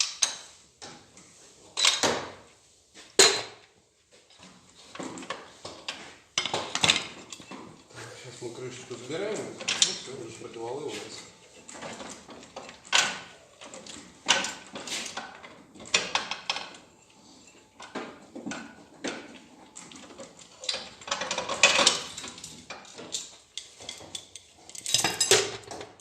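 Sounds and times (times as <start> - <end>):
metal engine parts clinking: 19.9 - 26.0.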